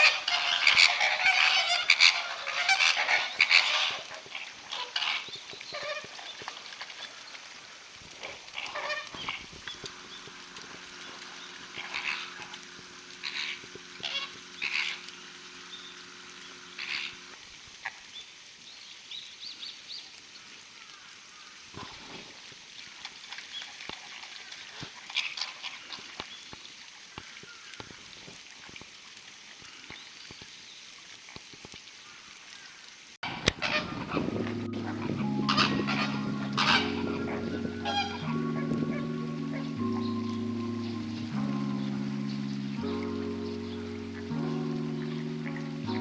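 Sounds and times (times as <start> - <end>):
flamingos honking: 0.0 - 17.4, 33.2 - 46.0
low hum: 33.6 - 46.0.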